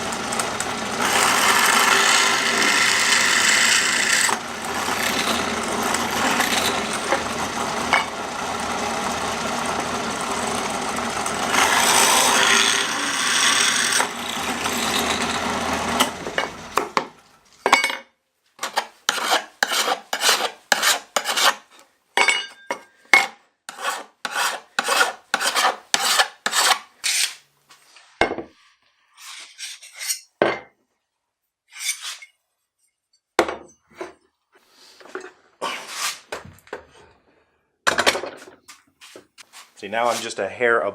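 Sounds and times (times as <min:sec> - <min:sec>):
power drill grinding through steel: 0:00.0 - 0:17.0
back-and-forth scraping strokes: 0:18.6 - 0:21.9, 0:23.7 - 0:30.3, 0:39.0 - 0:40.5.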